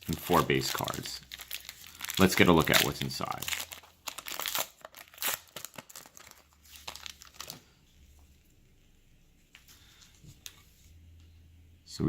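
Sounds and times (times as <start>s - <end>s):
card pack wrapper tearing and crinkling: 0.1s - 7.6s.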